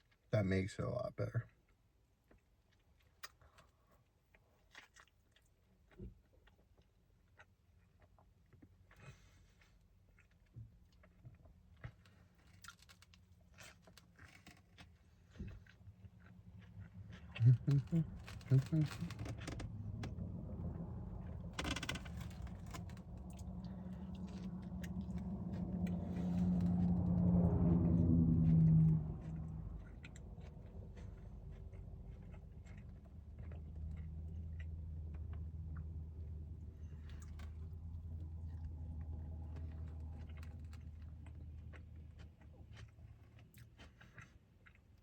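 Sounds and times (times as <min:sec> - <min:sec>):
chewing with wet crunches: 0:01.6 - 0:45.0
vehicle engine humming: 0:15.4 - 0:42.1.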